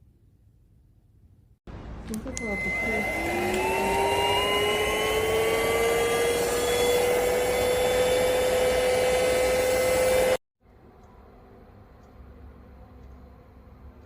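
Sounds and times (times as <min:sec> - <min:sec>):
vacuum cleaner running: 0:02.3 - 0:10.4.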